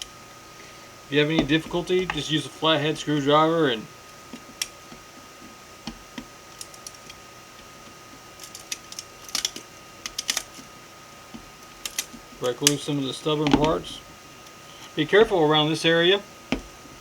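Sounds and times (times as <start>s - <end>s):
plastic clicks and cracks: 8.4s - 10.7s, 11.6s - 12.8s.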